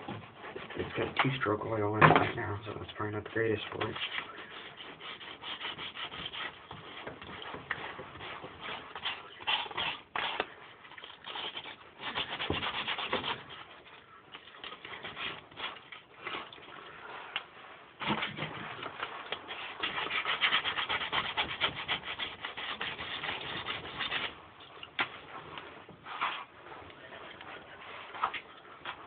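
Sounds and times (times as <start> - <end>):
sandpaper rubbing on metal: 4.0 - 7.1, 19.5 - 24.4.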